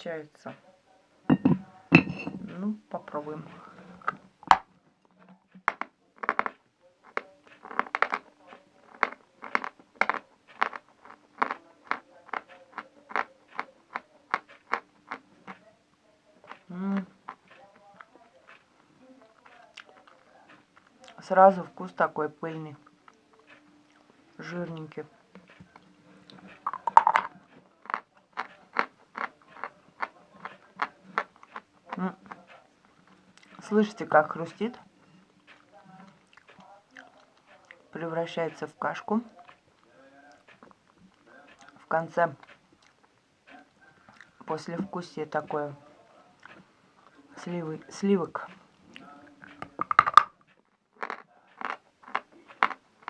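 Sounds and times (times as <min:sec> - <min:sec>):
person chewing chalk crunches: 0:07.1 - 0:08.2, 0:51.0 - 0:52.8.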